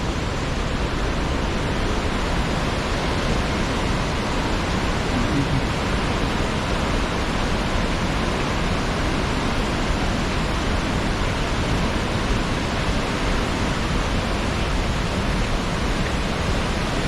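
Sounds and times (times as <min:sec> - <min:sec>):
waterfall rushing: 0:00.0 - 0:17.0.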